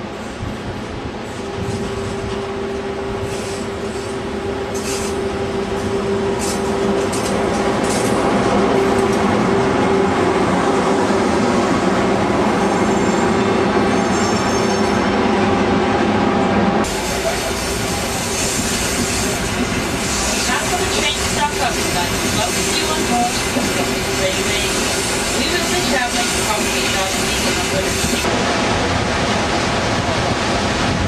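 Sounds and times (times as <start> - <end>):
train rumbling along track: 0.0 - 31.0.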